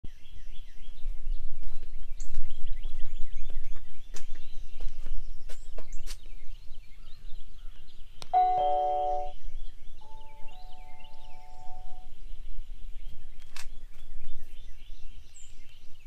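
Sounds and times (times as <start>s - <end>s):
small birds chirping: 0.1s - 16.0s
steady low rumble: 8.3s - 13.3s
steady ringing tones: 8.4s - 9.4s, 10.0s - 12.1s.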